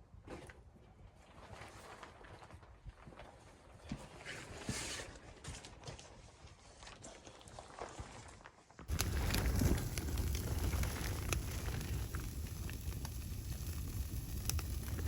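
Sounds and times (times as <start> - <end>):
loud rushing noise with crackles: 8.9 - 15.0.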